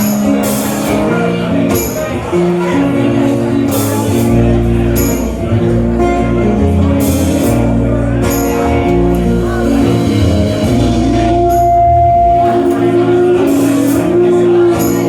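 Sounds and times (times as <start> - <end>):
live rock band playing: 0.0 - 15.0
held guitar lead note: 4.1 - 15.0.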